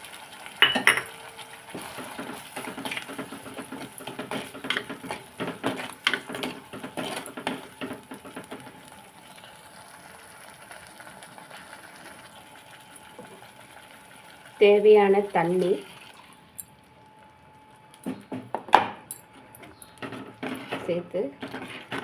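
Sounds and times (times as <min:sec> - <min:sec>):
spoon scraping clay pot: 0:03.8 - 0:07.6, 0:19.7 - 0:22.0.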